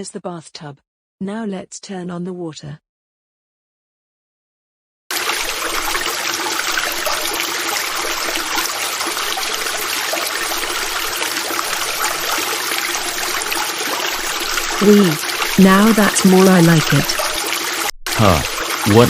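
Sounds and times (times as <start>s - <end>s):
tap water pouring into bathtub: 5.1s - 19.0s.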